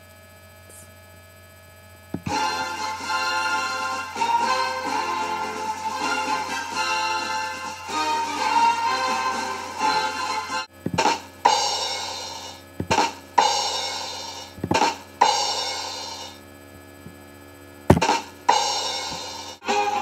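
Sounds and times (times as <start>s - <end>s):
drum hits: 10.8s - 11.6s, 12.8s - 13.6s, 14.5s - 15.6s, 17.9s - 18.4s.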